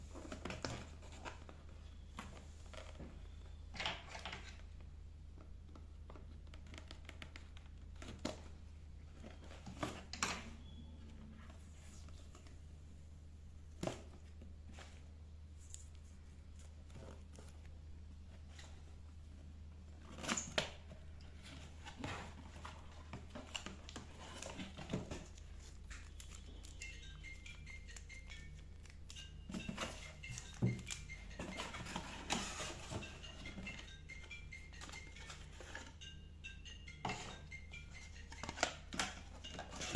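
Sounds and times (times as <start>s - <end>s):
packaging rustling and scraping: 20.0s - 26.9s, 28.8s - 33.9s, 38.2s - 39.9s.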